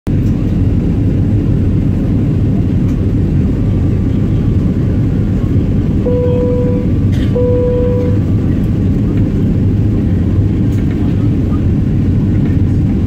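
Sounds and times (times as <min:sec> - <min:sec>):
airliner cabin engine roar: 0:00.1 - 0:13.0
electronic tone: 0:06.0 - 0:08.2.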